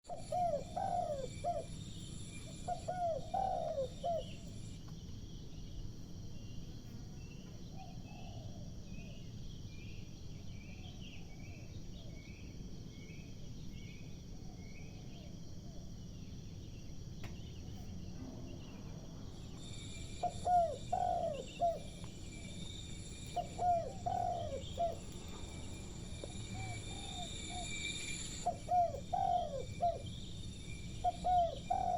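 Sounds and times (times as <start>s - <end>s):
dove cooing: 0.1s - 1.8s, 2.5s - 4.7s, 19.6s - 31.9s.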